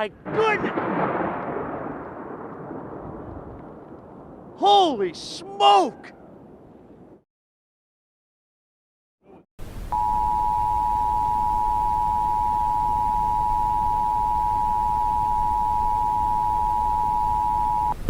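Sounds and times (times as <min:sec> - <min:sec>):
two-tone alert beep: 0:09.9 - 0:18.0.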